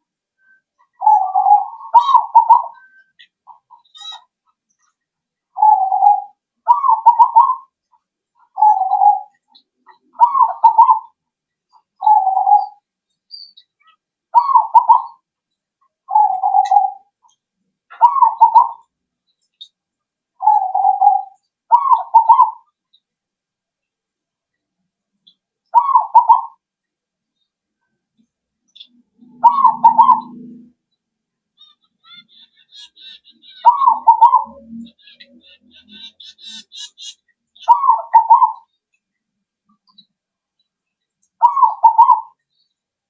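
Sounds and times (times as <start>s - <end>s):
dove cooing: 1.0s - 4.2s, 5.6s - 7.7s, 8.5s - 11.2s, 12.0s - 12.8s, 14.4s - 15.2s, 16.1s - 17.1s, 17.9s - 18.8s, 20.4s - 22.6s, 25.8s - 26.6s, 29.2s - 30.8s, 31.6s - 38.7s, 41.4s - 42.4s.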